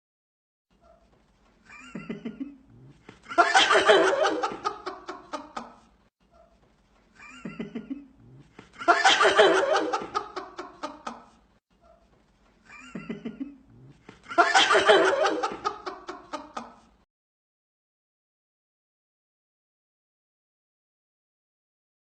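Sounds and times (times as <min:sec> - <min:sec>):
loud human laughter: 0:03.3 - 0:05.8, 0:08.8 - 0:11.4, 0:14.3 - 0:16.9.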